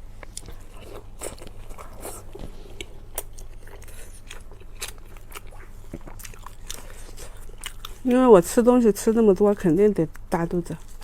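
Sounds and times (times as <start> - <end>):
person chewing food: 0.0 - 8.2.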